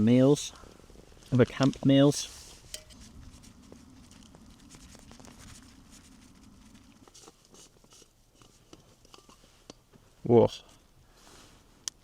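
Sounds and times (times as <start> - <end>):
low steady hum: 2.4 - 9.7
cooking gear clicking and rustling: 7.0 - 9.8.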